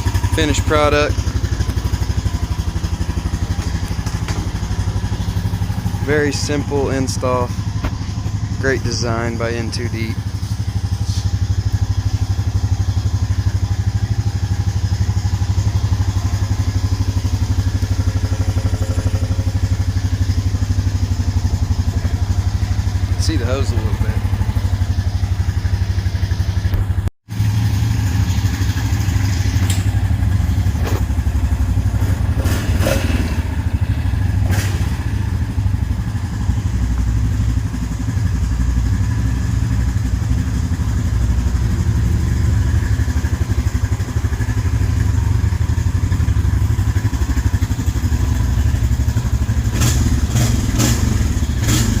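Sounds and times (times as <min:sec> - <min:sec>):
engine clattering knocks: 0:00.0 - 0:09.1
atv engine running: 0:00.0 - 0:52.0.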